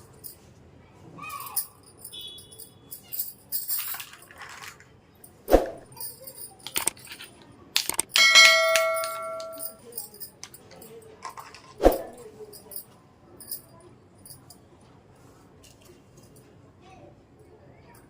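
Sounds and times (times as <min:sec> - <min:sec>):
plastic toy pieces clicking: 0:06.6 - 0:08.2
bright ringing ding: 0:08.2 - 0:09.8.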